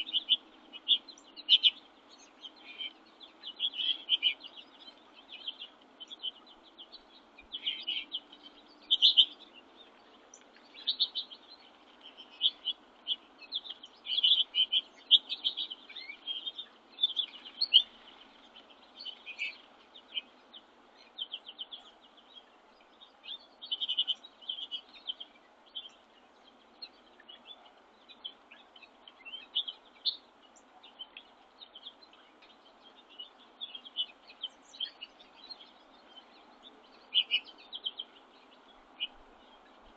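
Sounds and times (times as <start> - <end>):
faint background hiss: 0.0 - 39.9
songbirds chirping and twittering: 0.0 - 39.9.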